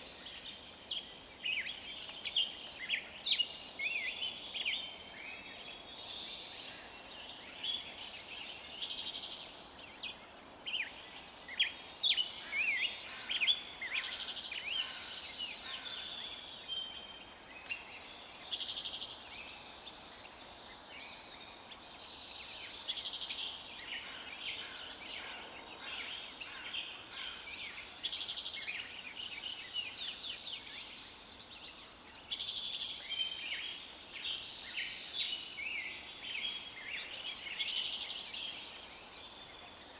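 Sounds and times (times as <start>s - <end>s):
faint steady hiss: 0.0s - 39.9s
songbirds singing and chirping: 0.0s - 39.9s.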